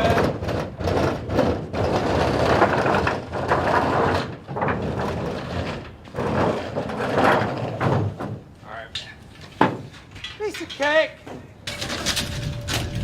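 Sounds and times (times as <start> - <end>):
roofing debris scraping and crunching: 0.0 - 8.4, 11.7 - 13.0.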